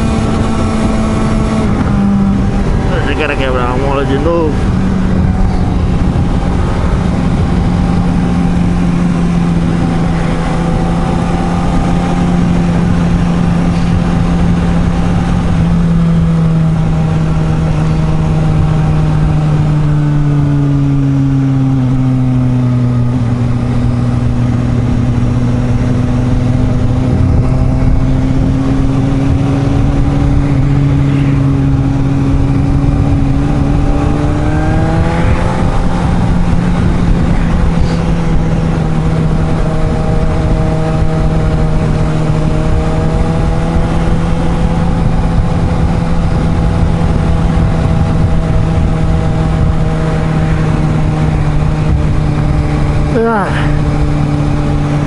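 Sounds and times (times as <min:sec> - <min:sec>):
motorcycle engine cruising: 0:00.0 - 0:55.0
wind rushing over microphone: 0:00.0 - 0:55.0.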